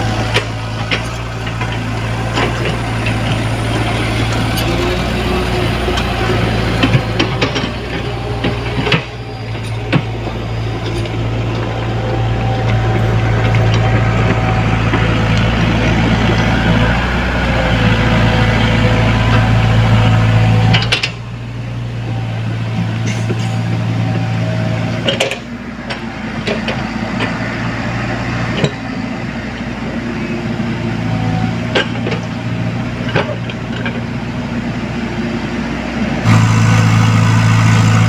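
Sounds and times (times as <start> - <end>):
diesel engine running under load: 0.0 - 38.0.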